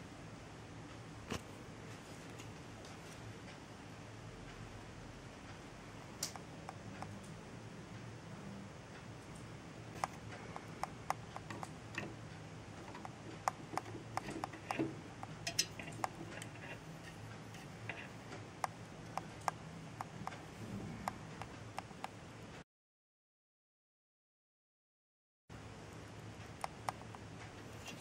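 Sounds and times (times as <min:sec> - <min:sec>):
steady low hum: 0:00.0 - 0:22.6, 0:25.5 - 0:28.0
small hard clicks and taps: 0:12.9 - 0:20.4.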